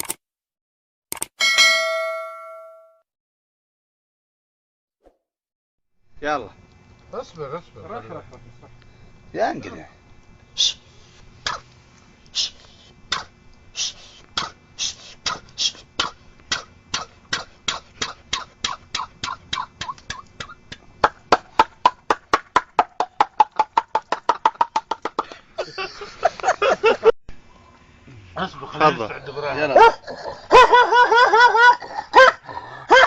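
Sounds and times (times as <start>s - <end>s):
man making mouth clicks: 11.4s - 22.0s.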